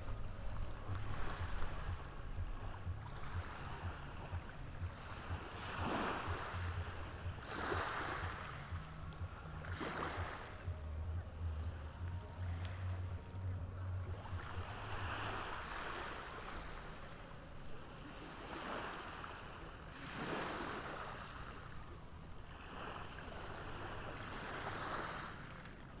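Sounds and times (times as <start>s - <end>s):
low hum: 0.0s - 17.9s
ocean waves washing in: 0.0s - 26.0s.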